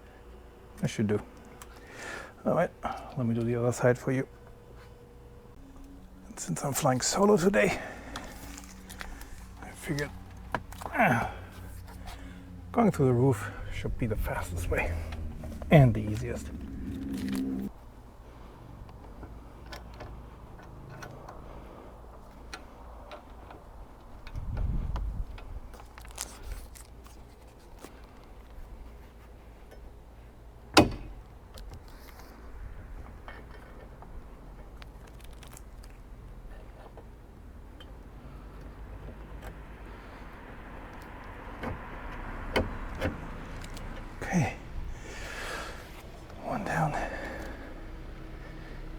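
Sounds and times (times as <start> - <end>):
steady low rumble: 5.4 - 18.5.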